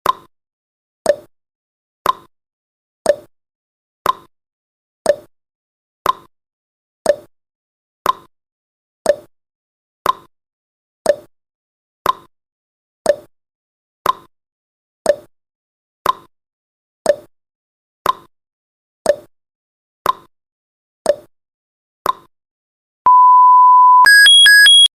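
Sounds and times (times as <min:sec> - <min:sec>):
rapidly switching electronic alarm: 0:23.1 - 0:24.9
steady electronic beep: 0:23.1 - 0:24.9
timer clicks ticking: 0:24.0 - 0:24.9.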